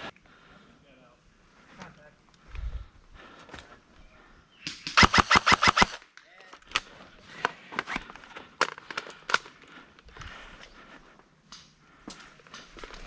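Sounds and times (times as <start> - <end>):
airsoft gun firing: 4.7 - 6.0.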